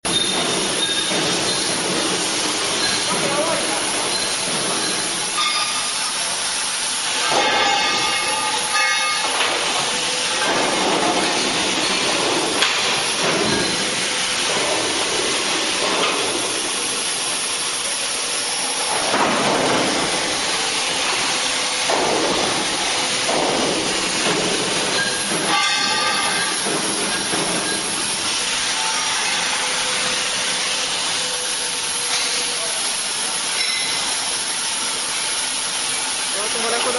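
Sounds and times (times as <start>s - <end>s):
loud hissing machine: 0.1s - 36.9s.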